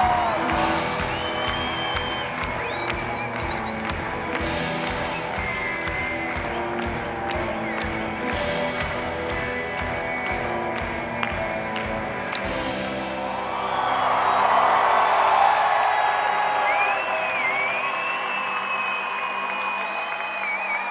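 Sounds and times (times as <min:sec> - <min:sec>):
live rock band playing: 0:00.0 - 0:14.7
drum beat: 0:00.0 - 0:14.8
crowd cheering: 0:00.0 - 0:20.9.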